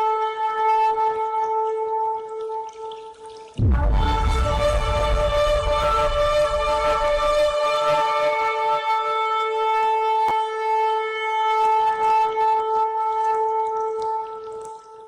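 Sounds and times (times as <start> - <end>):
long held musical note: 3.6 - 9.5.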